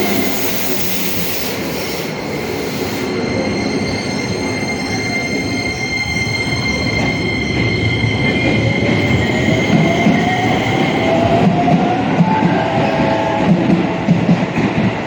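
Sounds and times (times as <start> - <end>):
high steady tone: 0.0 - 10.8
electric train motor whine: 0.0 - 11.1.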